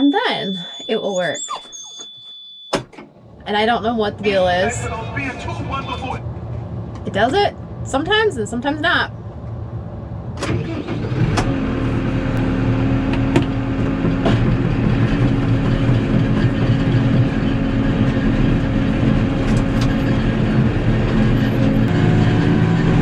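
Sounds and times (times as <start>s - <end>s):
tractor engine running: 10.2s - 23.0s.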